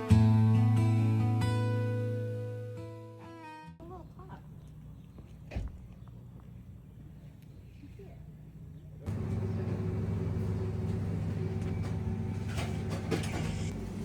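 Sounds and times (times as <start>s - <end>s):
car engine drone: 9.1s - 14.0s.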